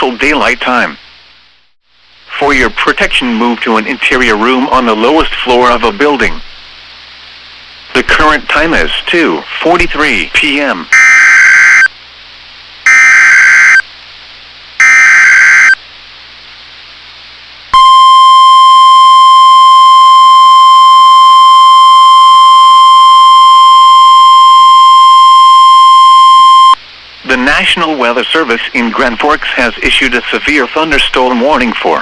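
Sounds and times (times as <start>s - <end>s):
steady warning alarm tone: 10.9s - 11.9s, 12.9s - 13.8s, 14.8s - 15.8s, 17.8s - 26.8s
warbling data tones: 10.9s - 11.9s, 12.9s - 13.8s, 14.8s - 15.8s.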